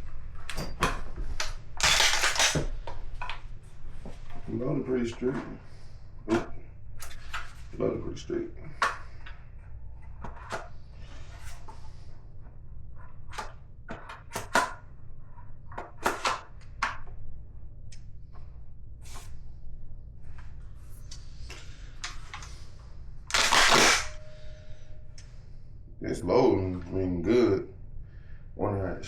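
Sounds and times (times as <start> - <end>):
shells clicking into magazine: 1.8 - 2.6, 23.3 - 24.2.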